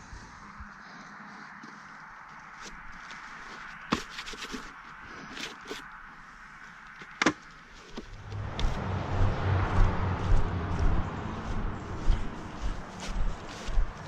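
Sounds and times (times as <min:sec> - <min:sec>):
footsteps crunching on leaves: 0:07.9 - 0:14.0
low rumbling noise: 0:08.0 - 0:14.0.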